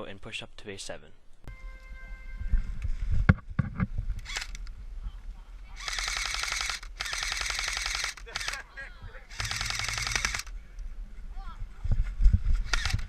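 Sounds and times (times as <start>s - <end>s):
airsoft guns firing full-auto: 5.8s - 8.6s, 9.3s - 10.5s, 12.7s - 13.0s.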